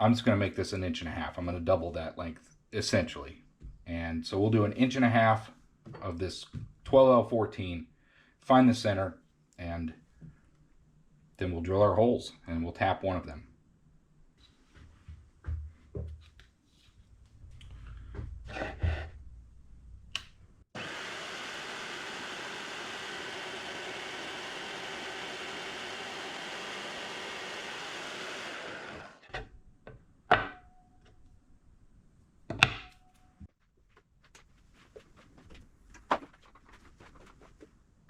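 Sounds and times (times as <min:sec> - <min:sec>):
power saw cutting steel bar: 0:20.8 - 0:29.3.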